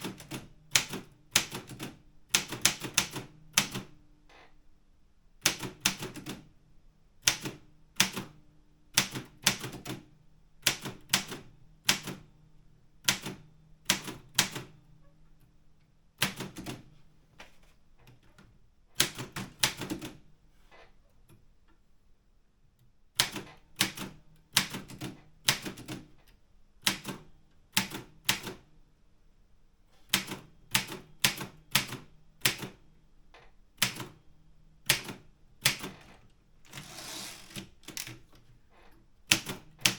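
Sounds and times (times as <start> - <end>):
typewriter keystrikes: 36.7 - 38.3.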